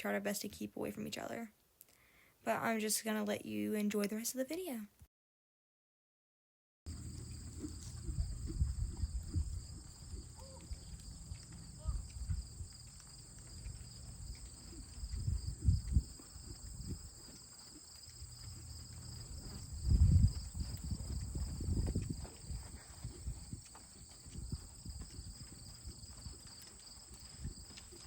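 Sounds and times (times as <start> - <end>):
horse hoofbeats: 6.9 - 28.0
insects chirping: 6.9 - 28.0.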